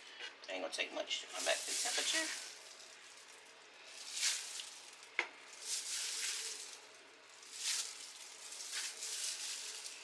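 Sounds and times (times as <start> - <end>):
chicken sizzling in a pan: 1.4 - 3.2, 3.9 - 10.0.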